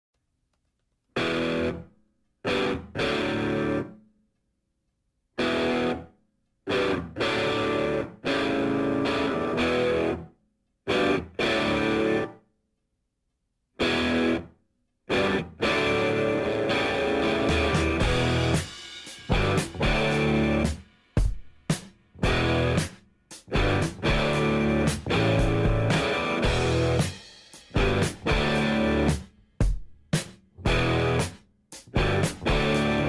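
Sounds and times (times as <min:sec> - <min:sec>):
distorted electric guitar chords: 0:01.2 - 0:04.0, 0:05.4 - 0:06.1, 0:06.7 - 0:10.3, 0:10.9 - 0:12.4, 0:13.8 - 0:14.5, 0:15.1 - 0:20.8, 0:22.2 - 0:29.3, 0:30.6 - 0:33.0.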